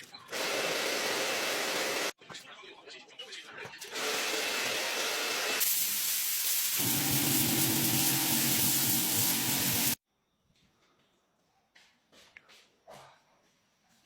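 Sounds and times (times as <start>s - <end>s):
loud steady hiss: 5.6s - 10.0s.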